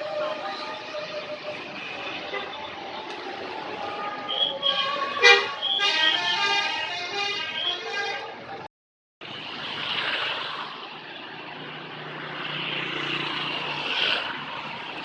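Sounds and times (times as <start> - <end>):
bus multi-tone horn tune: 0.0 - 3.0, 3.7 - 8.6
vehicle and road noise: 0.0 - 15.0.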